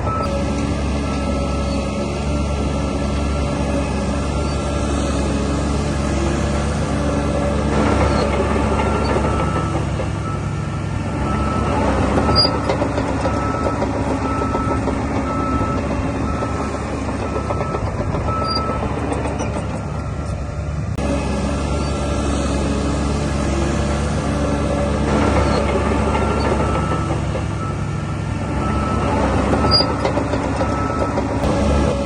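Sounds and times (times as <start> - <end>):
reversing alarm beeping: 0.0 - 0.4, 1.0 - 4.8, 8.0 - 18.9, 25.5 - 31.2
bulldozer diesel engine running: 0.0 - 32.0.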